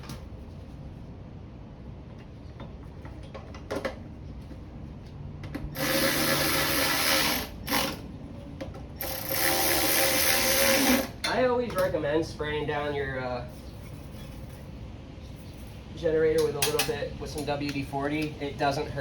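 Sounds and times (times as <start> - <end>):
tool handling clicks: 16.4 - 18.4.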